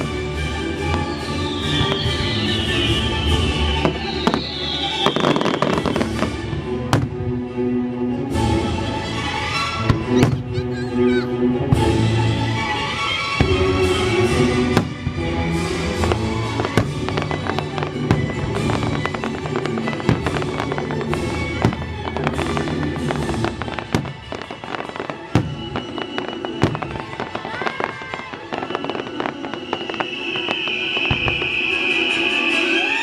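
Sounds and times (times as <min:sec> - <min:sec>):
fireworks bursting and crackling: 0:00.0 - 0:07.4, 0:08.3 - 0:33.0
orchestral music: 0:00.0 - 0:33.0
high steady whistle: 0:00.9 - 0:06.3, 0:25.3 - 0:33.0.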